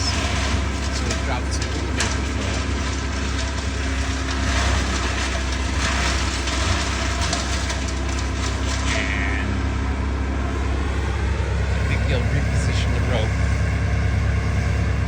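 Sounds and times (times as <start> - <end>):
faint clicks and crackles: 0.0 - 9.3
large engine idling: 0.0 - 15.0.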